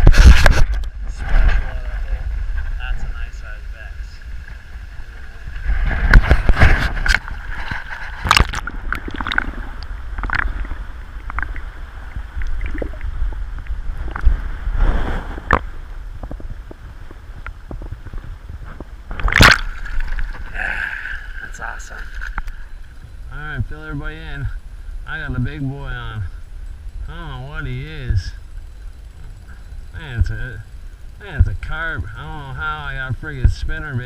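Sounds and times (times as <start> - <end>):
wind rumble on microphone: 0.0 - 34.0
water splashing and sloshing: 4.2 - 23.0.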